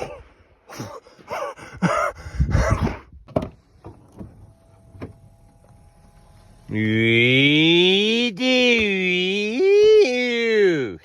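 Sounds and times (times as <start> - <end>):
person gasping and sighing: 0.0 - 3.1.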